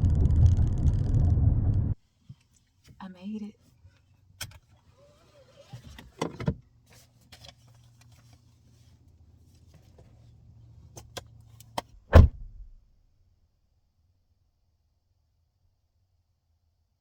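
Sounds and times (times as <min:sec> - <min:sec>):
car engine idling: 0:00.0 - 0:02.0
loud heavy thump: 0:12.1 - 0:12.8.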